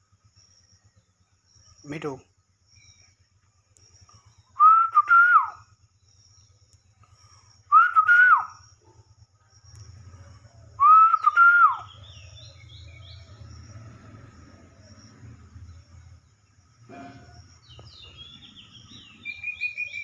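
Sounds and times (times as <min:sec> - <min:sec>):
faint chirps: 0:00.0 - 0:20.0.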